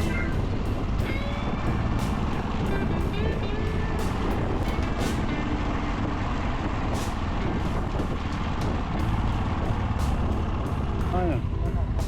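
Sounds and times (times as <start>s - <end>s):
motorcycle engine running: 0.0s - 12.0s
wind and road noise: 0.0s - 12.0s.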